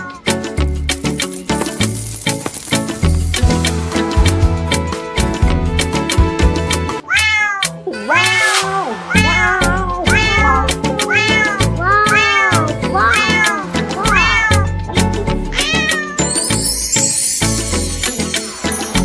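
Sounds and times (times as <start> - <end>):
cat meowing: 7.0 - 14.8, 15.5 - 16.3.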